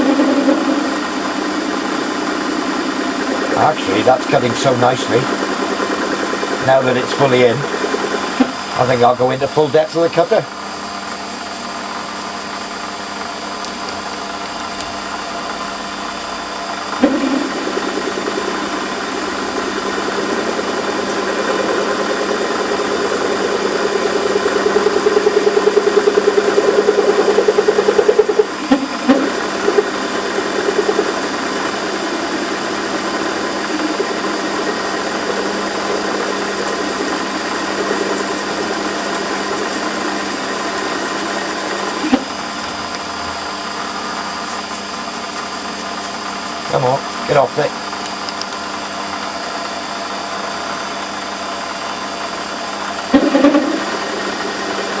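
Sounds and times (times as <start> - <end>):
milling cutter rattly chatter: 0.0 - 10.5, 17.0 - 42.9
lathe running: 0.0 - 55.0.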